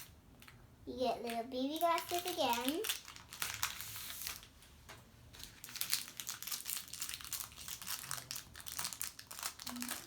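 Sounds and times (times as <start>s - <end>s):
packaging crinkling: 1.3s - 4.6s, 5.3s - 10.0s.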